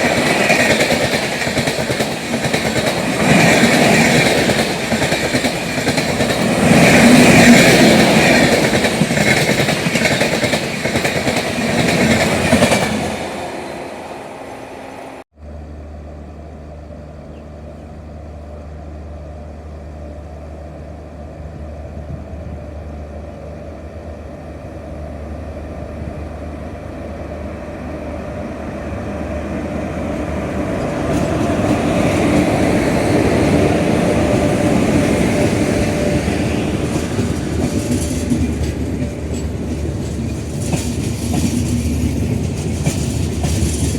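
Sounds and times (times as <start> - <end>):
train wheels on rails: 0.0 - 15.2, 17.6 - 43.9
low hum: 14.7 - 24.3.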